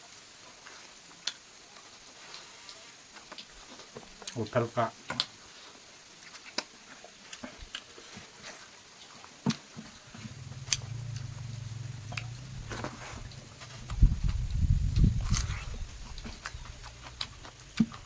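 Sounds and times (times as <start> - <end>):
chewing chicken: 0.4 - 18.0
steady low hum: 10.0 - 18.0.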